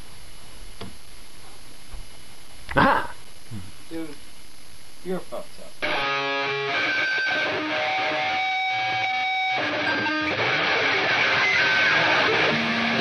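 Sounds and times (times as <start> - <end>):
strummed electric guitar music: 5.8 - 13.0.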